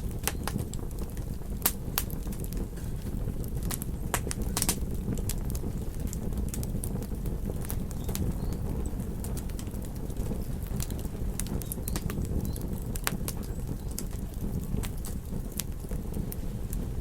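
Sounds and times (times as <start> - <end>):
fire crackling pops and snaps: 0.0 - 17.0
low rumble of flames: 0.0 - 17.0.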